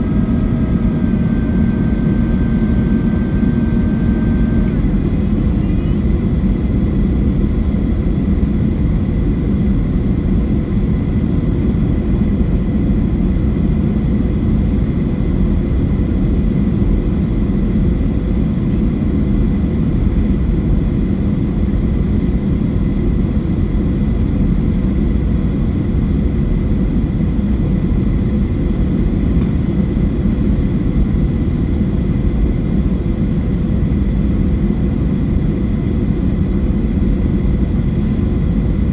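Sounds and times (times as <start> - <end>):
thin steady whine: 0.0 - 6.4
airplane cabin engine roar: 0.0 - 38.9.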